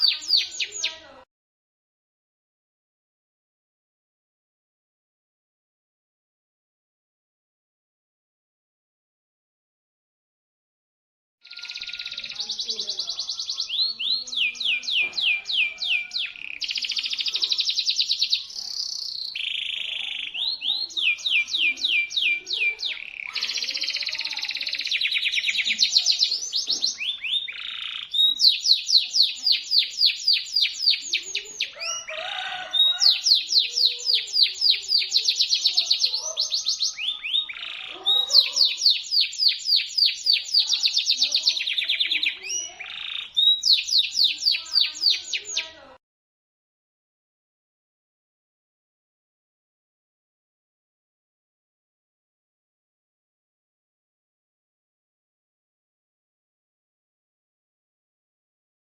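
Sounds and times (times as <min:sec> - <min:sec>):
canary singing trills: 0:00.0 - 0:01.2, 0:11.4 - 0:46.0.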